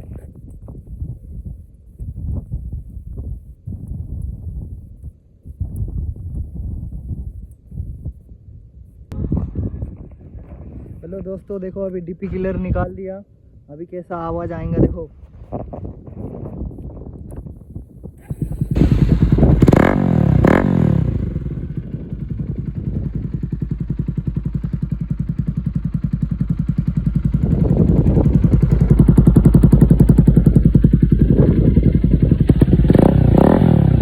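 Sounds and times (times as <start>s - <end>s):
motorcycle engine revving and idling: 18.1s - 34.0s.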